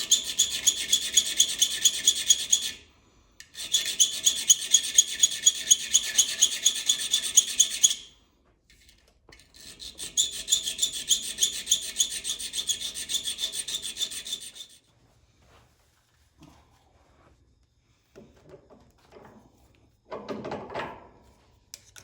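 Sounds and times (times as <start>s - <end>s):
hand file rasping on metal: 0.0s - 8.1s, 9.5s - 14.8s.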